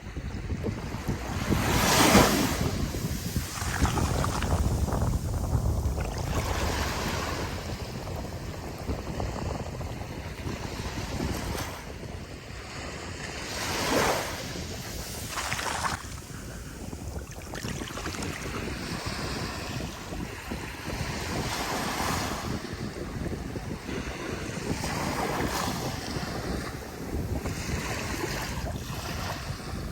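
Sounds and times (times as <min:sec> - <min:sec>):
wind buffeting microphone: 0:00.0 - 0:29.9
ocean surf breaking: 0:01.2 - 0:08.0.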